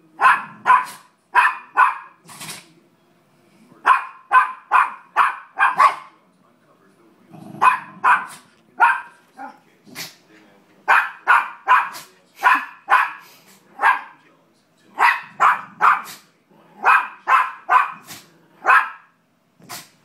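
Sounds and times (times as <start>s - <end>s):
dog barking: 0.2s - 2.2s, 3.8s - 6.2s, 7.6s - 9.2s, 10.9s - 14.2s, 15.0s - 16.2s, 16.8s - 19.9s.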